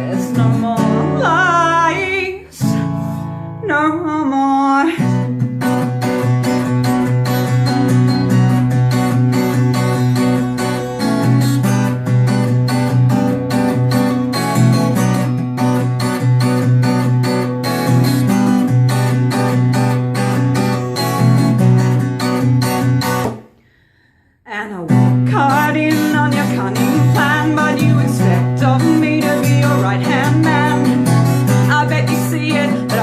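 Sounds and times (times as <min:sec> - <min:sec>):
acoustic guitar strumming chords: 0:00.0 - 0:04.2, 0:05.0 - 0:23.8, 0:24.8 - 0:33.0.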